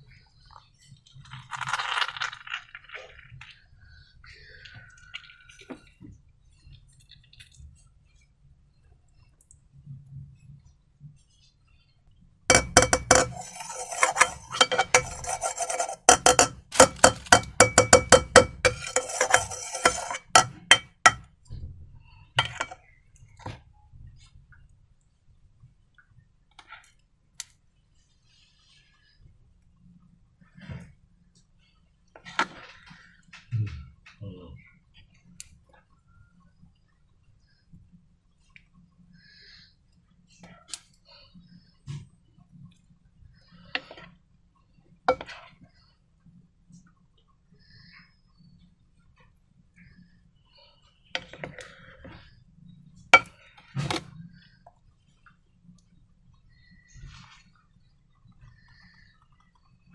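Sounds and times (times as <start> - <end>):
objects clinking against a bowl: 12.5 - 21.3, 22.4 - 22.8, 53.2 - 53.4.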